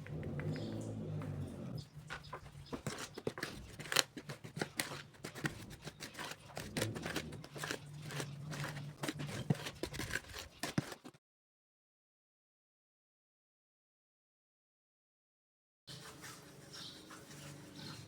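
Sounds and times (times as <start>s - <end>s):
kitchen utensils clicking and scraping: 1.8s - 11.2s.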